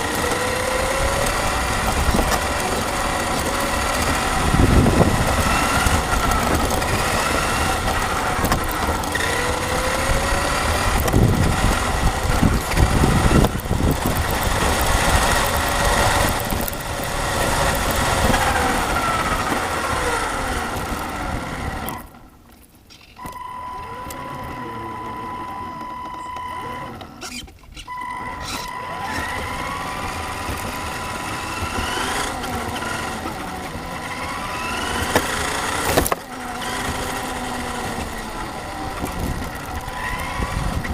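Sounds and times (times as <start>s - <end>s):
toy car motor whining: 0.0s - 22.2s, 22.9s - 40.9s
steady high tone: 23.2s - 27.2s.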